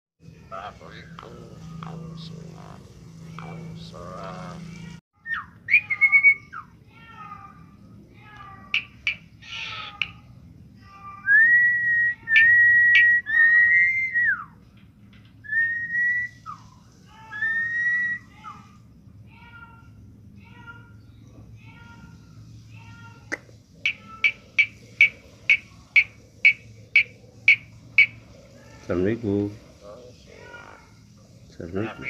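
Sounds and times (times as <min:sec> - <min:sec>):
bird whistling long notes: 0:05.2 - 0:06.7, 0:11.3 - 0:14.6, 0:15.4 - 0:16.7, 0:17.3 - 0:18.7, 0:23.9 - 0:28.2
bird chirps and clicks: 0:08.4 - 0:10.2, 0:12.3 - 0:13.2, 0:23.3 - 0:28.2.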